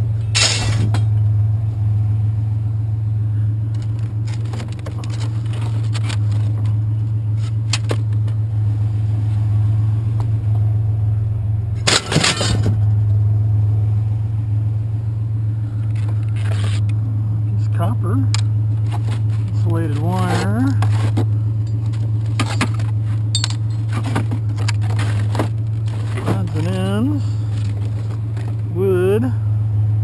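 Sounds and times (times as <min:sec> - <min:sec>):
vehicle engine idling: 0:00.0 - 0:30.0
loud metal clatter: 0:11.8 - 0:12.8
metal clinks: 0:23.3 - 0:23.9.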